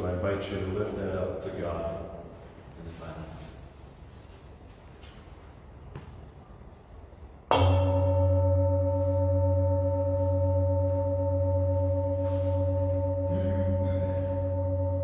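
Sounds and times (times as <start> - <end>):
singing bowl ringing: 7.5 - 15.0.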